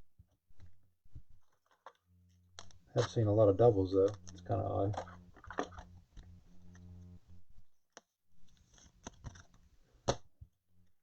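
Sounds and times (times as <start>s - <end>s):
cards rustling: 8.5s - 10.0s.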